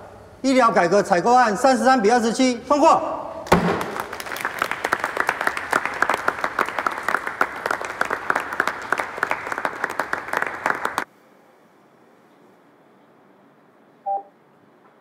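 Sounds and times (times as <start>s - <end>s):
crowd applauding: 3.7s - 11.1s.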